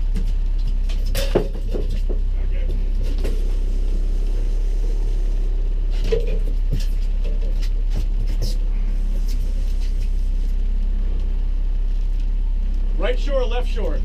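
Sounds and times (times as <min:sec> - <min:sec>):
knocks and clatters: 0:00.0 - 0:03.7, 0:05.9 - 0:10.2
boat motor droning: 0:00.0 - 0:14.0.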